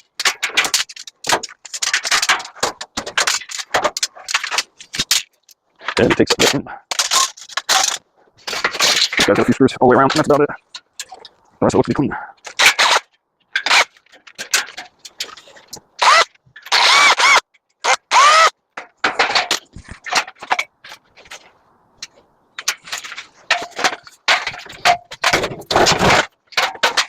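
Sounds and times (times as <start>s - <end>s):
metal clicks and clanks: 0.0s - 16.8s, 18.7s - 27.0s
drill motor whining: 16.0s - 17.4s, 18.0s - 18.5s.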